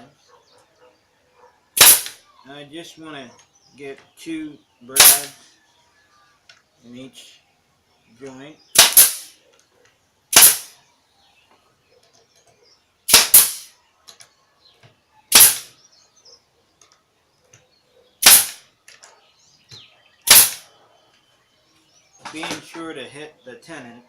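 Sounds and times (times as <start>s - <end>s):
brad nailer firing: 1.8s - 2.2s, 5.0s - 5.4s, 8.8s - 9.3s, 10.3s - 10.7s, 13.1s - 13.7s, 15.3s - 15.7s, 18.2s - 18.6s, 20.3s - 20.6s.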